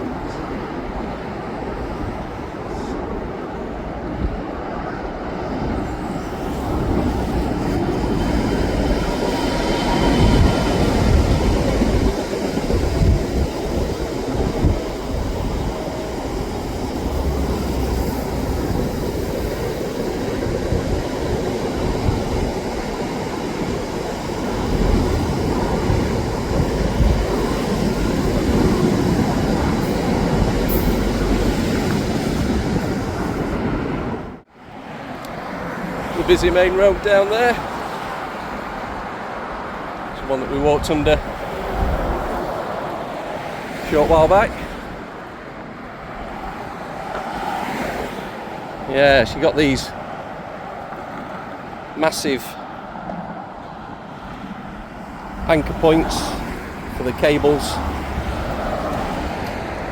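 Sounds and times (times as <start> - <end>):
train rumbling: 0.0 - 59.9.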